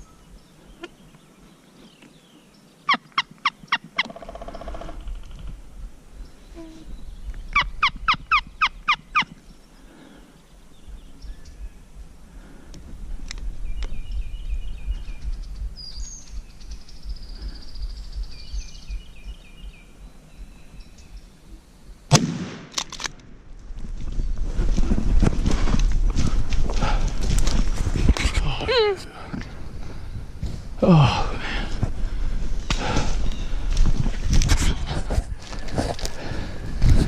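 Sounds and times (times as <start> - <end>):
small birds chirping: 0.0 - 5.5, 6.1 - 22.1, 28.2 - 34.0
shotgun blast echoing: 22.1 - 23.0.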